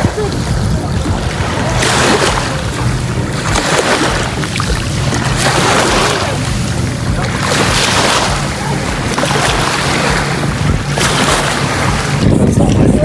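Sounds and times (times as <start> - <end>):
surf washing in: 0.0 - 13.0
wind rumbling on microphone: 0.0 - 13.0.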